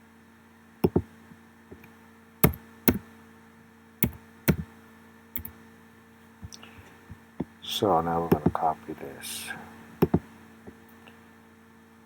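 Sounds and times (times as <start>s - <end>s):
low electrical hum: 0.0s - 12.0s
mouse and keyboard clicks: 0.8s - 1.0s, 1.7s - 3.0s, 4.0s - 4.6s, 10.0s - 10.2s.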